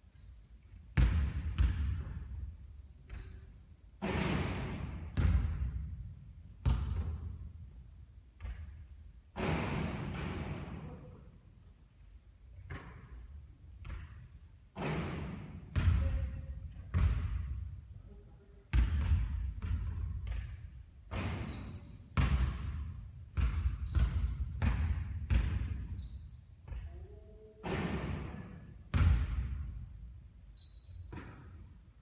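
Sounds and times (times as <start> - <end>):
short high squeaks: 0.1 - 0.9, 30.6 - 31.2
basketball bouncing on a court: 1.0 - 2.5, 3.1 - 7.7, 8.4 - 11.0, 12.6 - 17.8, 18.7 - 29.8, 30.8 - 31.5.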